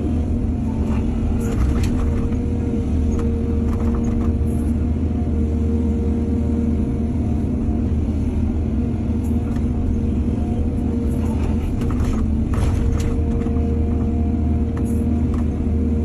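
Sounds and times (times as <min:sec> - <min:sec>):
excavator diesel engine running: 0:00.0 - 0:16.0
excavator clattering: 0:00.6 - 0:04.6, 0:11.0 - 0:15.6.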